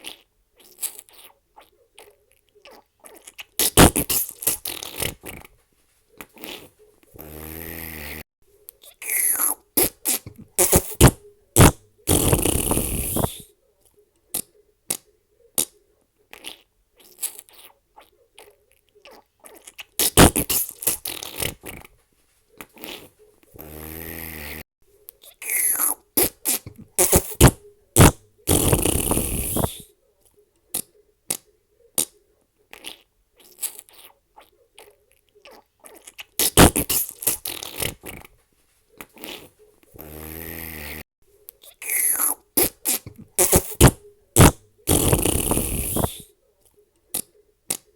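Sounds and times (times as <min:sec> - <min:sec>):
fart sound effects: 0:03.6 - 0:05.5, 0:06.4 - 0:08.2, 0:09.0 - 0:13.4, 0:20.0 - 0:21.9, 0:22.8 - 0:24.6, 0:25.4 - 0:29.8, 0:36.4 - 0:38.3, 0:39.2 - 0:41.0, 0:41.8 - 0:46.2.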